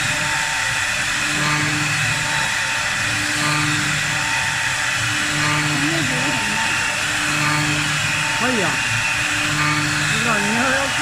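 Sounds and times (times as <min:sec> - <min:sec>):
low machine hum: 0:00.0 - 0:11.0
wood lathe cutting hiss: 0:05.0 - 0:11.0.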